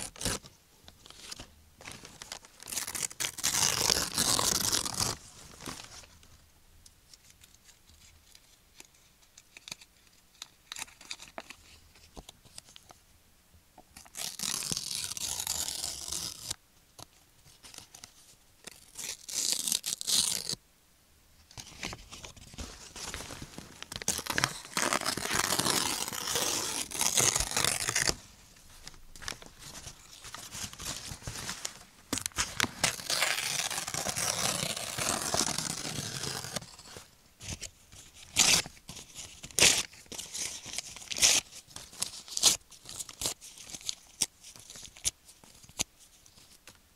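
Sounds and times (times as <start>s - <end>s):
paper tearing and crumpling: 1.9s - 5.8s, 14.0s - 16.6s, 18.7s - 20.6s, 21.6s - 28.2s, 28.9s - 45.1s.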